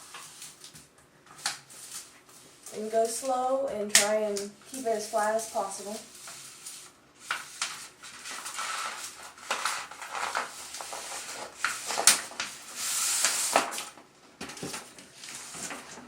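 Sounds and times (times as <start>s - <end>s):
backing paper peeling: 3.9s - 13.9s.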